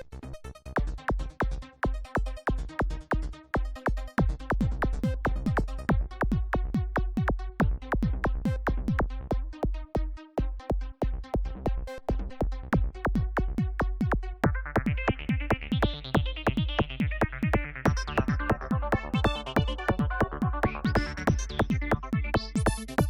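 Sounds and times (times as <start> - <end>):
fast kick-drum beat: 0.8 - 23.0
electronic dance music: 12.8 - 23.0
held synthesizer notes: 14.5 - 23.0.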